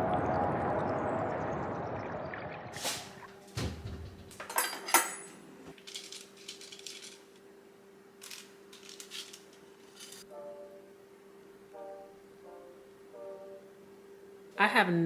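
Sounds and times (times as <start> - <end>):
kitchenware clinking and clattering: 2.8 - 7.4, 8.2 - 10.3
faint steady hum: 3.2 - 15.0.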